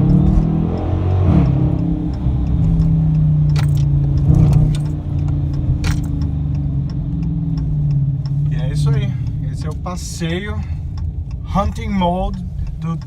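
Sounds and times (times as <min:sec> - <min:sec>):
car engine and exhaust running: 0:00.0 - 0:13.0
sharp clicks or rattles: 0:02.7 - 0:08.3.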